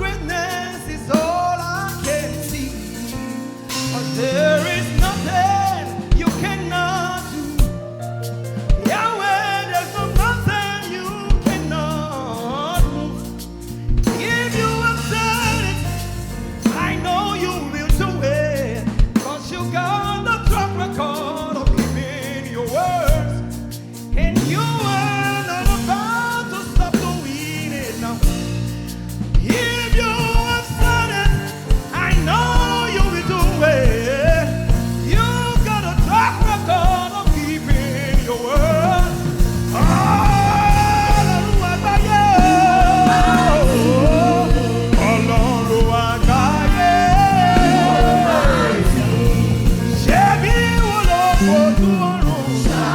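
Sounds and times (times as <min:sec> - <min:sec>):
bass: 0:00.0 - 0:52.9
drum kit: 0:00.0 - 0:52.9
person singing lead: 0:37.3 - 0:52.9.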